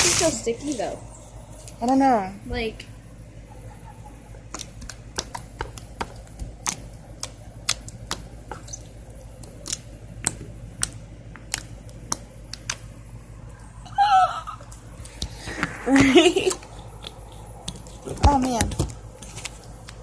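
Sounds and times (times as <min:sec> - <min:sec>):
slime clicking and popping: 0:04.5 - 0:08.8, 0:09.4 - 0:12.9.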